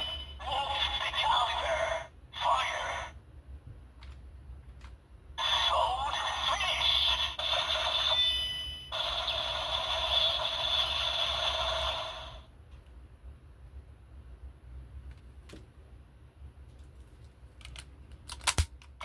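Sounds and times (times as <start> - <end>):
toy electronic sound effect: 0.0 - 3.1, 5.4 - 12.4.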